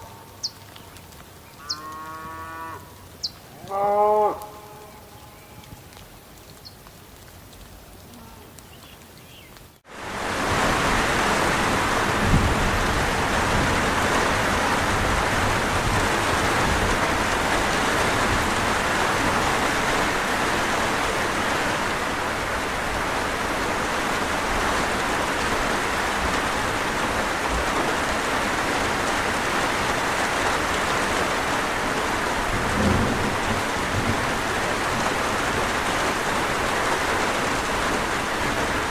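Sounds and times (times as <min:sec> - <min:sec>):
heavy rain: 0:00.0 - 0:38.9
low thunder rumbling: 0:10.5 - 0:20.2, 0:31.7 - 0:37.8.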